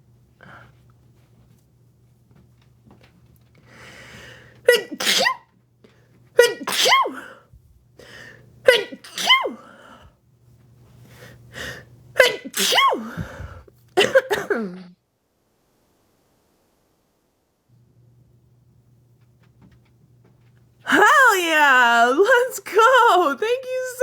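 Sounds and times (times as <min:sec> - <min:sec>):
woman sneezing: 0:04.7 - 0:05.5, 0:06.4 - 0:07.5, 0:08.7 - 0:09.7, 0:12.2 - 0:14.9, 0:20.9 - 0:21.6
short in-breaths: 0:13.0 - 0:13.7.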